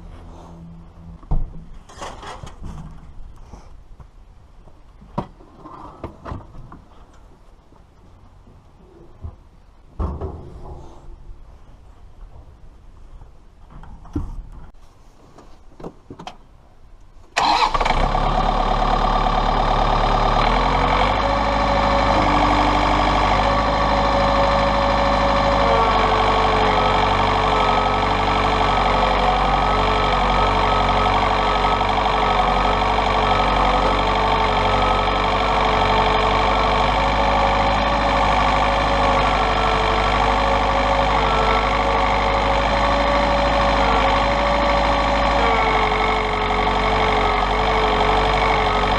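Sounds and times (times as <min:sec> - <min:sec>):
tractor diesel engine running: 0:17.4 - 0:48.9.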